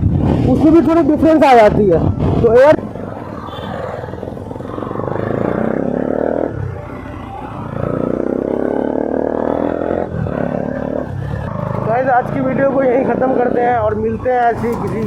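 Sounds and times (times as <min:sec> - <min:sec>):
motorcycle engine revving: 0:00.0 - 0:15.0.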